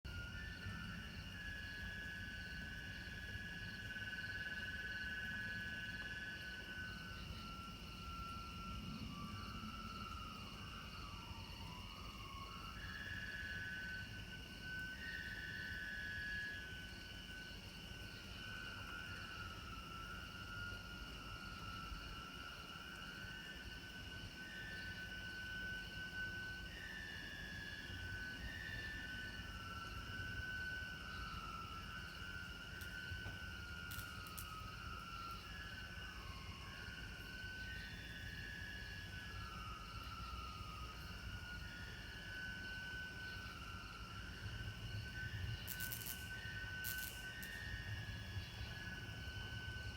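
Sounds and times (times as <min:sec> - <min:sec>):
insects chirring: 0:00.1 - 0:49.9
bug zapper cracks: 0:33.9 - 0:34.5, 0:45.7 - 0:47.6.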